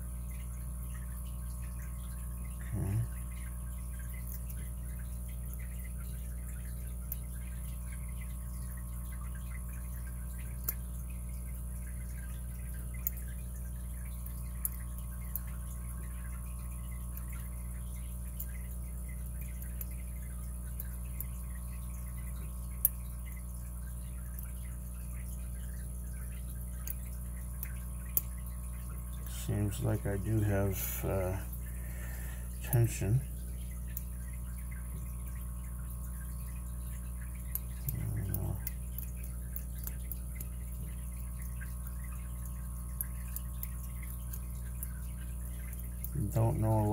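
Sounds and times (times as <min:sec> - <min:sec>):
electrical hum: 0:00.0 - 0:46.9.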